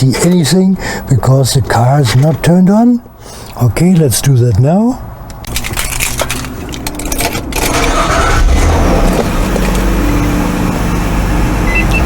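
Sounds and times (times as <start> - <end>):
car engine starting and idling: 5.5 - 12.0
ignition clicks: 7.1 - 9.9.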